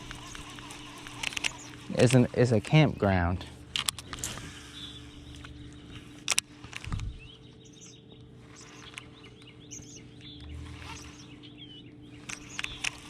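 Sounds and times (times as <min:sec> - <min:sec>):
songbirds chirping: 0:00.0 - 0:13.0.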